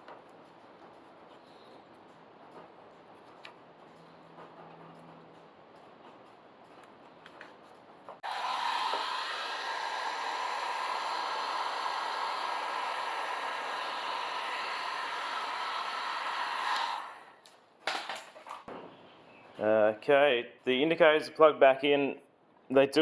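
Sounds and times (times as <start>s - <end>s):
electric blower rushing: 8.2s - 17.4s.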